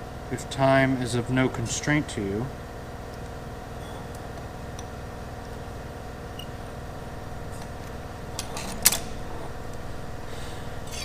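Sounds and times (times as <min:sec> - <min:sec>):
shop machinery humming: 0:00.0 - 0:11.0
steel parts clinking: 0:10.8 - 0:11.0.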